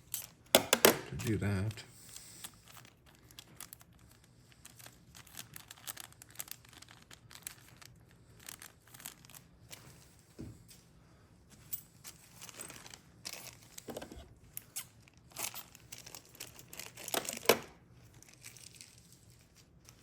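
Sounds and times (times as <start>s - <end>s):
plastic bags crinkling: 2.6s - 9.9s, 12.2s - 14.2s, 14.9s - 20.0s.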